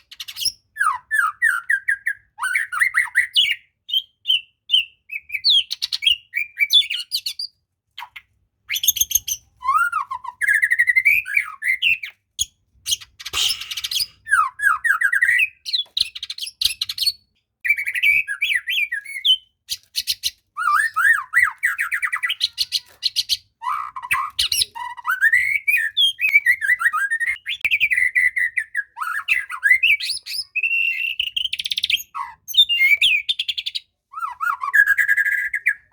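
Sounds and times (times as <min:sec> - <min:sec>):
bird singing whistled phrases: 0:08.7 - 0:12.1, 0:13.3 - 0:35.9.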